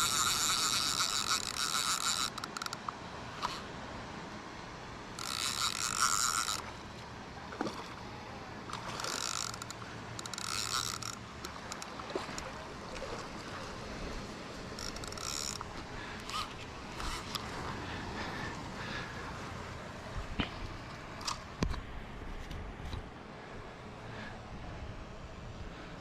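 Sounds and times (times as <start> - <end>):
fly reel ratchet buzzing: 0.0 - 2.9, 5.1 - 6.7, 9.0 - 11.9, 14.8 - 17.4.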